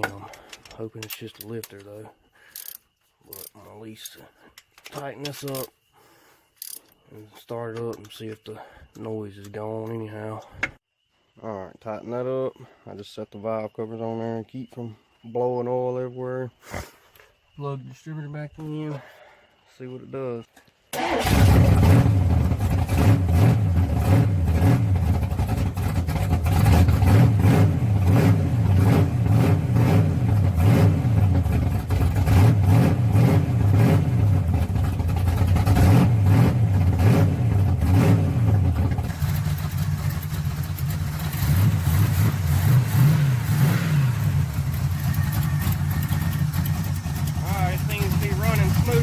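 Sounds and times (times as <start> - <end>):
car engine revving and idling: 21.2 - 49.0.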